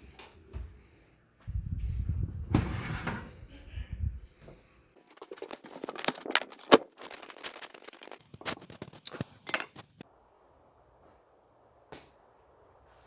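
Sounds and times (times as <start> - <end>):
objects being handled: 5.0 - 10.0.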